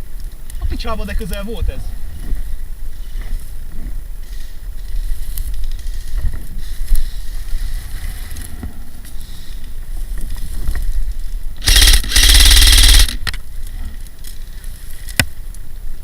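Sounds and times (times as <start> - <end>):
faint rustling of movement: 0.0 - 11.6, 13.2 - 16.0
airsoft rifle firing full-auto: 11.6 - 13.3.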